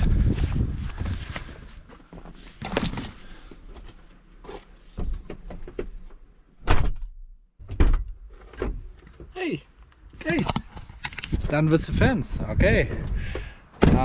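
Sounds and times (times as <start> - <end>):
camera handling knocks and rustling: 2.5 - 3.2, 10.2 - 11.4.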